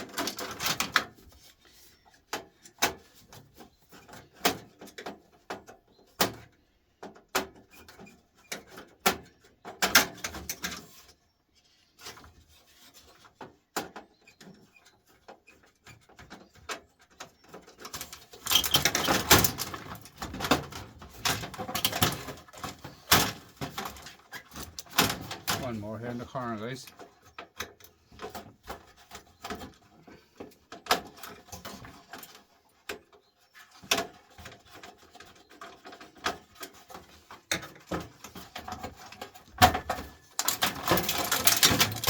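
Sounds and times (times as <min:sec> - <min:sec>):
metal parts clattering: 0:17.9 - 0:25.6, 0:38.2 - 0:42.0.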